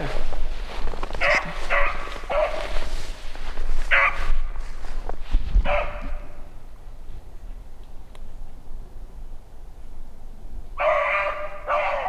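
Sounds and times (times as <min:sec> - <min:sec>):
dog baying: 0:01.2 - 0:02.9, 0:03.9 - 0:04.3, 0:05.6 - 0:06.3, 0:10.8 - 0:12.0.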